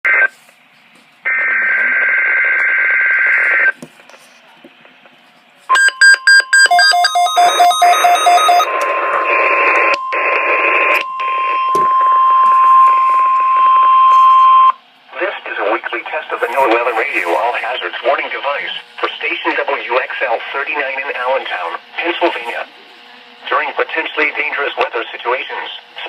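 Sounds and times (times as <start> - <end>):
radio static hiss: 0.1 - 0.6, 1.2 - 5.1, 8.5 - 11.6, 15.1 - 26.0
electronic beeps: 5.7 - 14.8
steady warning alarm tone: 5.7 - 14.8.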